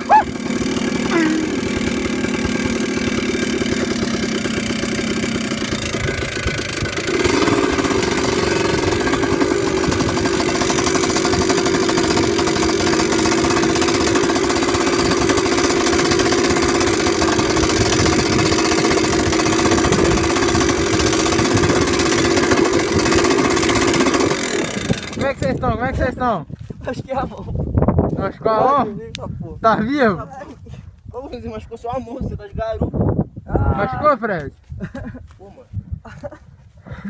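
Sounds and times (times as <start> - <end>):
motorcycle engine running: 0.0 - 25.6.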